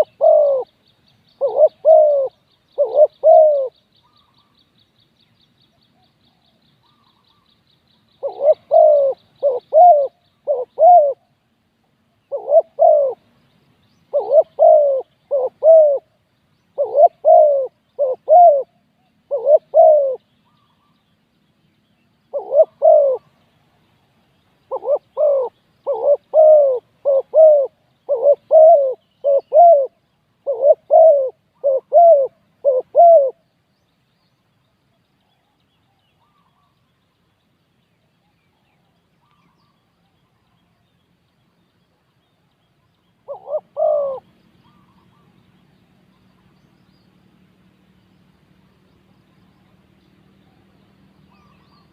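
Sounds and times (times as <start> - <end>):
dove cooing: 0.0 - 4.5, 8.2 - 11.4, 12.2 - 13.3, 14.1 - 20.9, 22.3 - 23.5, 24.6 - 33.5, 43.2 - 45.4, 49.4 - 51.9.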